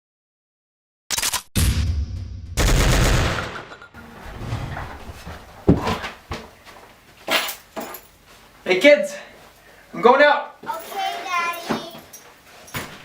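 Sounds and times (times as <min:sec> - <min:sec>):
rapid gunfire burst: 0:02.6 - 0:03.6
single sharp gunshots: 0:02.6 - 0:03.7.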